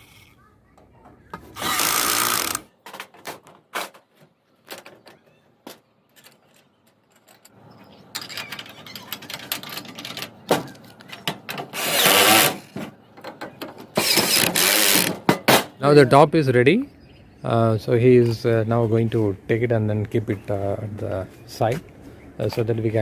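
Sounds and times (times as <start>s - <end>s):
power screwdriver driving screws: 1.6s - 2.7s, 11.7s - 12.6s, 14.0s - 15.2s.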